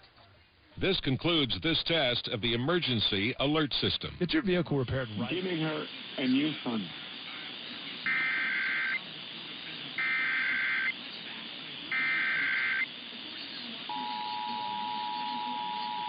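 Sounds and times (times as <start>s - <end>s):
background hiss: 0.0s - 16.0s
buzzy data tone bursts: 1.9s - 16.0s
two-tone attention signal: 8.1s - 9.0s, 10.0s - 11.0s, 11.9s - 12.9s, 13.9s - 16.0s.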